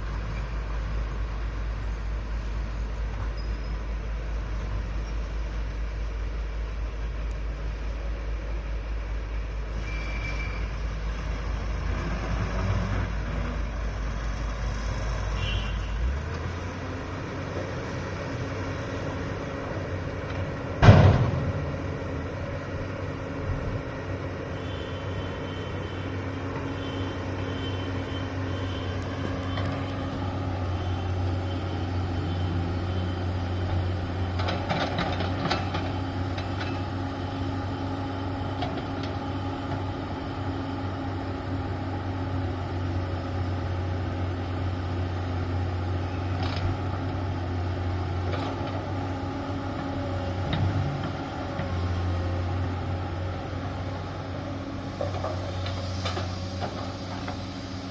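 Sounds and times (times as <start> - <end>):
heavy machinery engine drone: 0.0 - 57.9.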